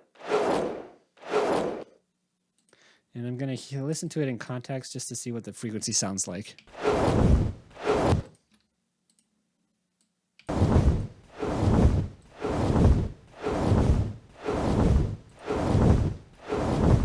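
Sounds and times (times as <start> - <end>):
deep whooshing wing flaps: 0.2 - 1.8, 6.7 - 8.2, 10.5 - 17.0.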